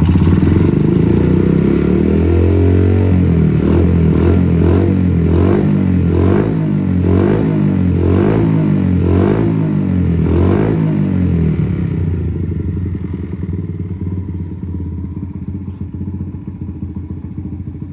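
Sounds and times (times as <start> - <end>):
motorbike engine idling: 0.0 - 6.1, 11.0 - 17.9
motorbike engine revving: 0.0 - 13.6.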